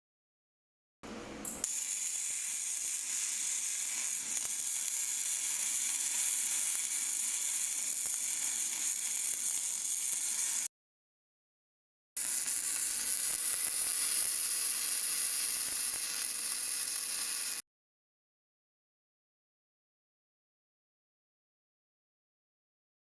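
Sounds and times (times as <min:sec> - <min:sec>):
welding arc crackling: 0:01.5 - 0:10.7, 0:12.2 - 0:17.6.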